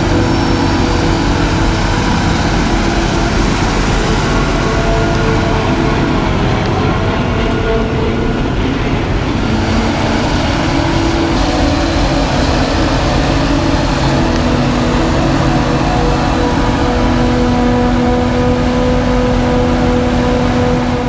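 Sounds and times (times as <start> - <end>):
forage harvester engine drone: 0.0 - 21.0
steady machine tones: 0.0 - 21.0.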